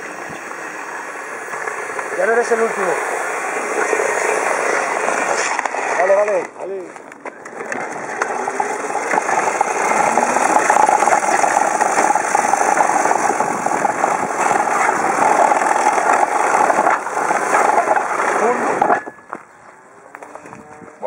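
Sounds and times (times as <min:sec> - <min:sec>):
model tractor motor buzzing: 0:07.4 - 0:19.4.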